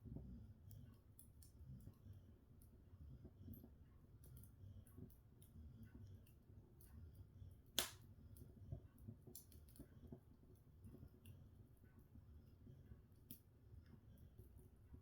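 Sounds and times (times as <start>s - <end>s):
log fire crackling: 7.6s - 8.0s, 9.2s - 9.9s
sharp fire pop: 7.8s - 8.0s.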